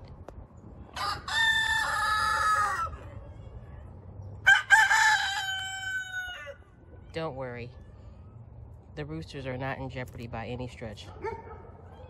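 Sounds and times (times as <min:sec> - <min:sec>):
rooster crowing: 0:01.0 - 0:03.0, 0:04.4 - 0:06.6.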